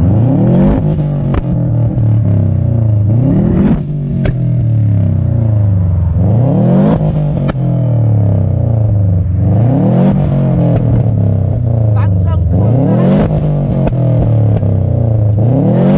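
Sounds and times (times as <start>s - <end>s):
car engine revving: 0.0s - 15.9s
exhaust pops and bangs: 0.6s - 2.4s, 3.6s - 4.7s, 10.1s - 11.3s, 13.2s - 14.8s.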